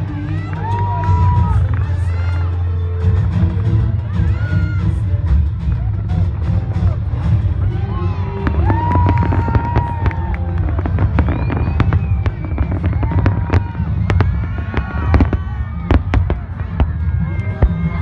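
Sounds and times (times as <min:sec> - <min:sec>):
fireworks bangs and crackles: 0:00.0 - 0:18.0
low rumble: 0:05.9 - 0:18.0.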